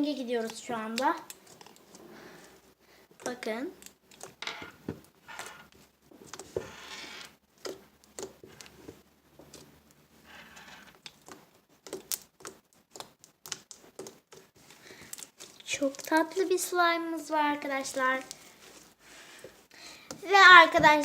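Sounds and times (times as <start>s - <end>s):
slime squelching and popping: 0.4s - 6.6s, 7.5s - 10.1s, 11.0s - 16.9s.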